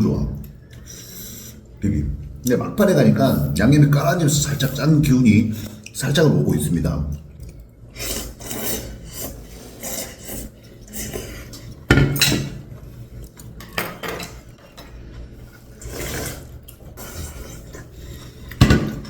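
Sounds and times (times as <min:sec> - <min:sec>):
cutlery clinking on dishes: 0:11.9 - 0:12.6, 0:13.6 - 0:14.9.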